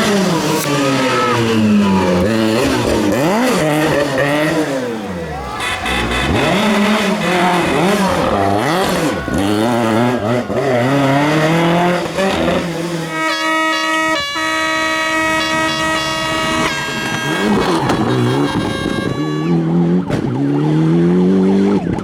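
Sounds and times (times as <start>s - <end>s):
car engine revving: 0.0s - 22.0s
loud horn blast: 5.3s - 20.0s.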